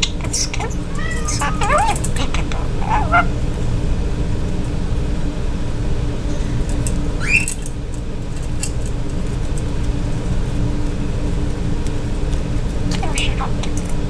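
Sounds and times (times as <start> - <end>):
budgerigar chirp: 0.0 - 3.4, 7.2 - 7.5, 12.9 - 13.8.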